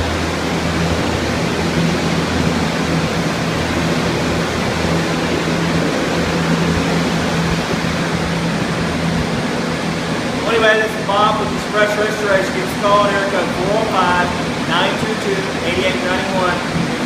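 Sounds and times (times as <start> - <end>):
fans rushing air: 0.0 - 17.0
low motor hum: 0.0 - 17.0.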